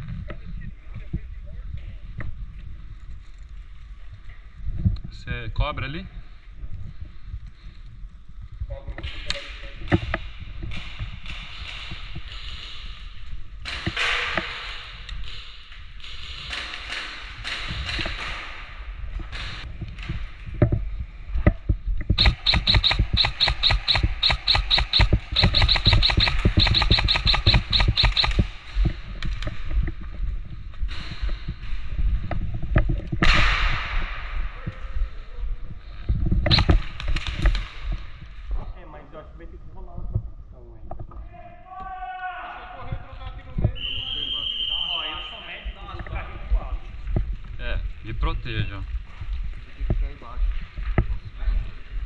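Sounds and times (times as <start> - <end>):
rustle of player movement and gear: 0.0 - 5.5
airsoft gun firing rapidly: 22.2 - 28.6, 36.5 - 36.8.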